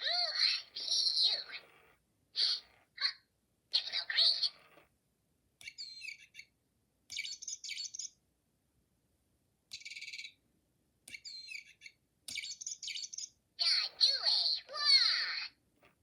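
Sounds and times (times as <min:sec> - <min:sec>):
bird chirps: 0:05.6 - 0:06.5, 0:07.1 - 0:08.2, 0:09.7 - 0:10.4, 0:11.1 - 0:13.8.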